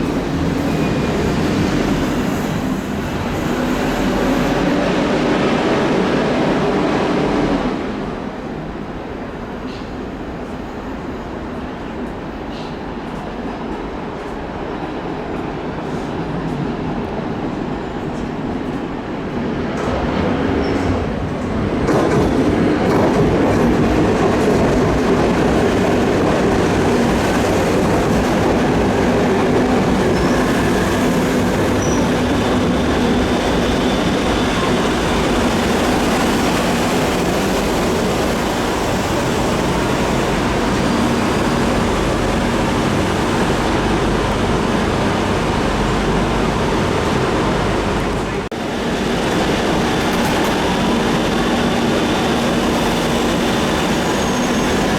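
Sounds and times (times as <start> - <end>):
train wheels rumbling on rails: 0.0 - 54.9.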